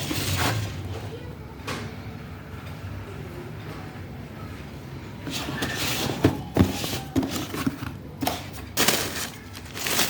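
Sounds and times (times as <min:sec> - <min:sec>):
packaging rustling and crinkling: 0:05.3 - 0:10.0.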